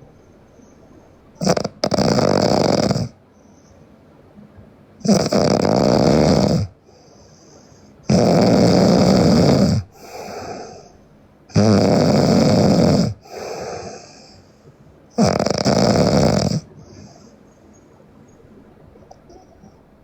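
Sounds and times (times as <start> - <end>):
woman snoring loudly: 1.4 - 3.2, 5.0 - 6.8, 8.1 - 10.8, 11.5 - 14.3, 15.2 - 16.7
soft breath: 3.2 - 4.2, 6.8 - 8.1, 9.8 - 11.2, 13.2 - 15.0, 16.6 - 19.8.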